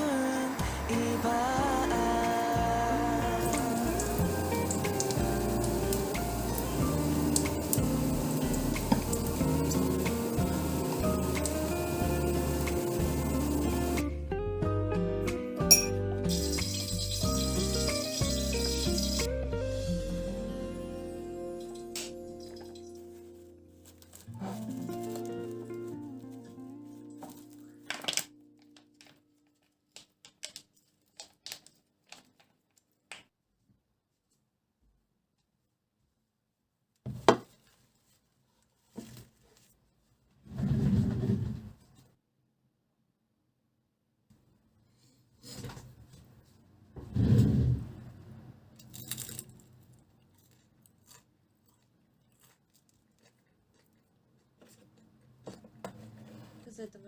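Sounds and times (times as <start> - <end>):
background music: 0.0 - 29.2
rustle of handling: 22.5 - 27.9, 37.5 - 40.2.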